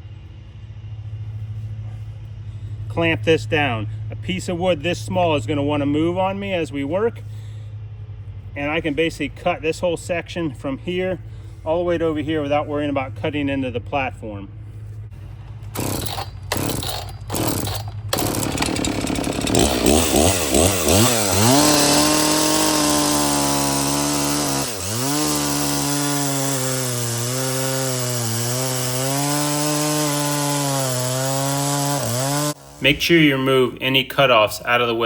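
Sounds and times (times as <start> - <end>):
chainsaw cutting log: 15.4 - 33.4.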